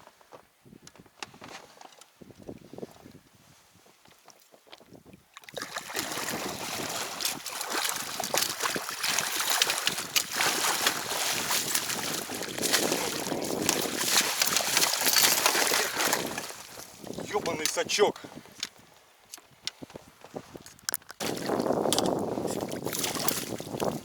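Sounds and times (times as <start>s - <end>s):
fish thrashing water splashing: 5.4s - 16.9s, 21.2s - 22.0s, 22.6s - 24.0s.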